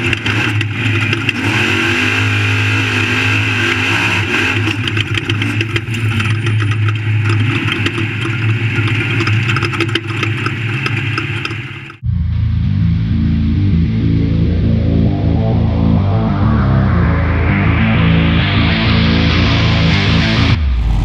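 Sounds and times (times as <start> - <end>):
rapid clicks and rattles: 0.0 - 1.8, 3.7 - 12.0
race truck engine running hard: 0.0 - 21.0.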